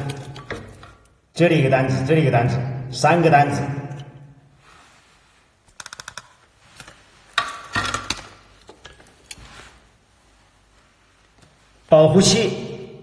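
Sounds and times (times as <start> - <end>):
parts clattering: 0.0 - 1.2, 5.7 - 9.9
small parts clicking: 5.7 - 6.9.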